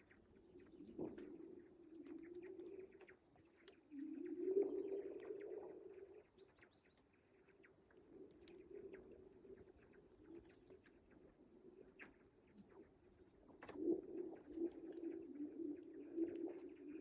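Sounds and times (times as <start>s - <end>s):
fine crackling ticks of ice: 0.1s - 4.0s.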